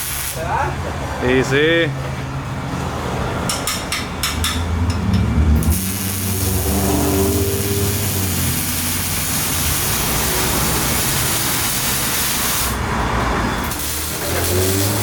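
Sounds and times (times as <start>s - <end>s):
steady loud hiss: 0.0s - 0.7s, 5.6s - 12.9s, 13.6s - 15.0s.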